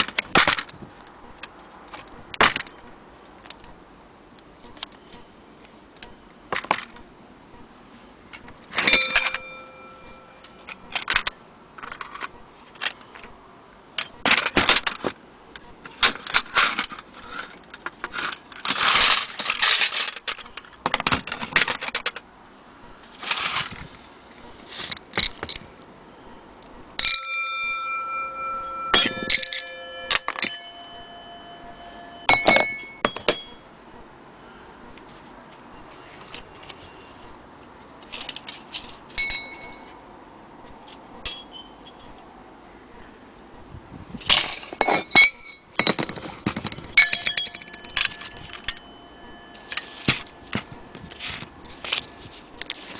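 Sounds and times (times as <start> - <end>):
metal parts rattling and clinking: 8.3 - 22.2, 23.2 - 23.9, 24.9 - 25.9, 26.6 - 33.6, 37.9 - 39.9, 40.8 - 42.2, 44.2 - 52.9
clock bell ringing: 8.8 - 10.9, 26.9 - 33.7, 47.0 - 51.0.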